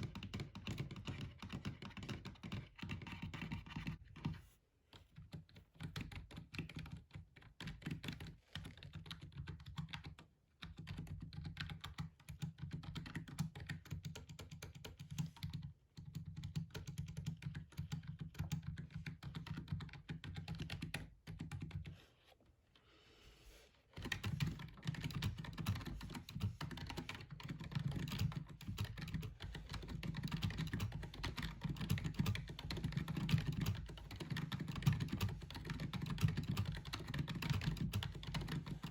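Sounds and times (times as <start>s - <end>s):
keyboard typing: 0.0s - 4.3s, 24.0s - 38.9s.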